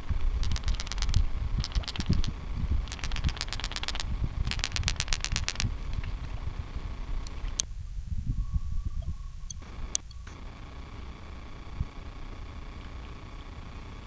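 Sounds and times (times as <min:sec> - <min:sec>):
low rumble of wind: 0:00.0 - 0:14.0
frog calling in clicks: 0:00.4 - 0:06.2, 0:09.0 - 0:10.4.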